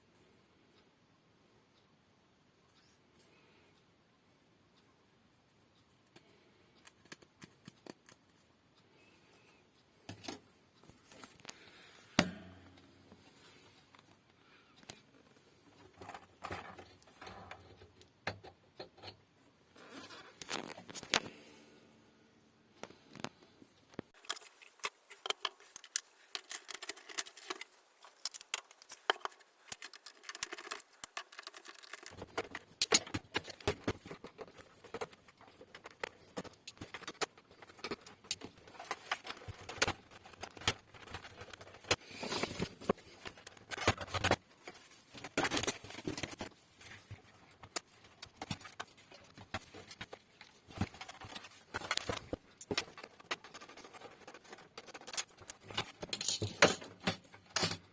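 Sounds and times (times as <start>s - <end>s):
hands handling small hardware: 24.2s - 57.9s.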